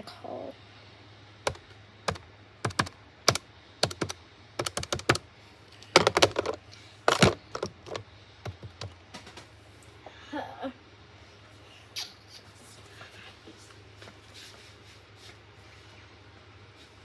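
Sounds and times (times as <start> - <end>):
phone keypad buttons clicking: 1.5 - 5.2, 6.0 - 8.9.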